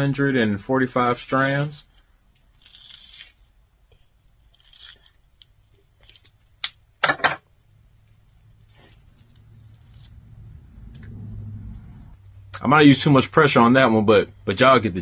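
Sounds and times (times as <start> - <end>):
wire stripper scraping insulation: 1.3 - 3.6, 8.6 - 12.0
tearing rasp: 1.3 - 6.4, 8.4 - 12.2.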